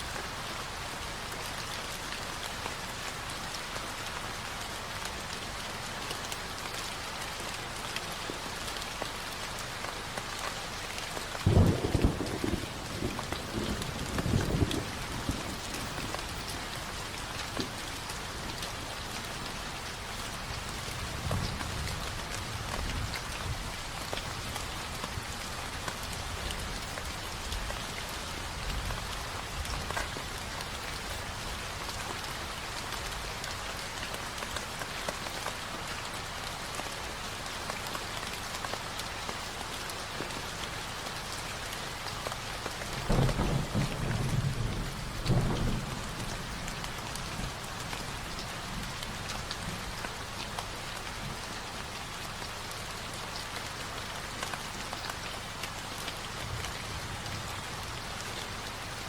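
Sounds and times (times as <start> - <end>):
steady rain: 0.0 - 59.0
thunder rumbling: 11.4 - 17.8, 43.0 - 49.2.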